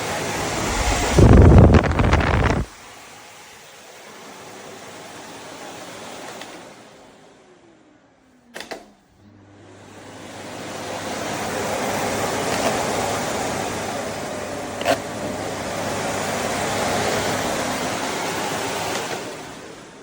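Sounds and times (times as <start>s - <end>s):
vacuum cleaner motor: 0.0s - 20.0s
vacuum cleaner switch click: 8.5s - 9.0s, 18.8s - 19.4s.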